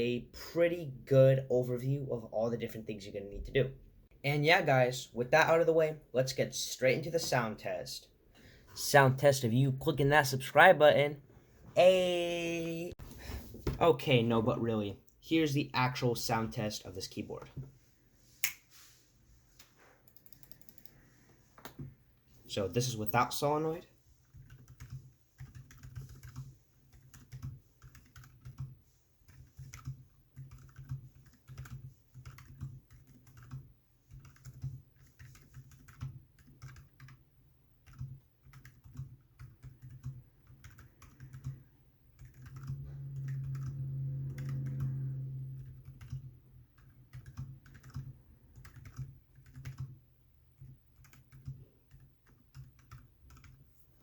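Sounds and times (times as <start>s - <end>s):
mechanical keyboard typing: 20.1s - 21.0s, 24.3s - 37.2s, 37.8s - 45.0s, 45.6s - 50.0s, 50.6s - 53.6s
low hum: 42.7s - 45.9s.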